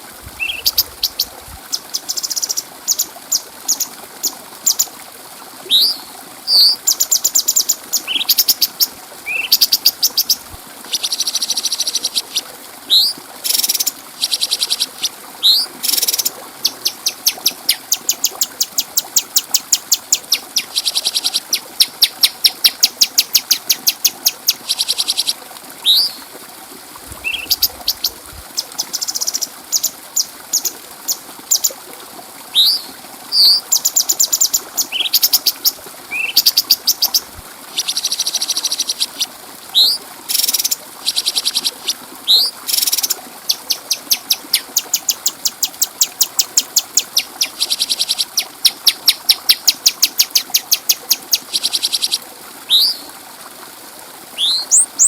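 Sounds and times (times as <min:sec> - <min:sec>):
faint steady hiss: 0:00.0 - 0:55.0
bird whistles and trills: 0:05.7 - 0:06.9, 0:10.9 - 0:14.8, 0:32.6 - 0:35.4, 0:42.3 - 0:53.0, 0:54.4 - 0:55.0.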